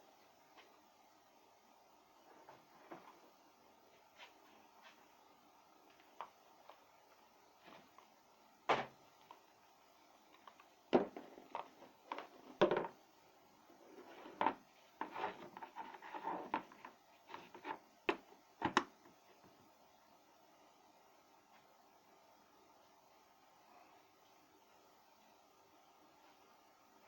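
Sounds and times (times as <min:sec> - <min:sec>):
hard objects knocking and clicking: 0:10.9 - 0:13.0
scraping or rubbing: 0:13.8 - 0:17.8.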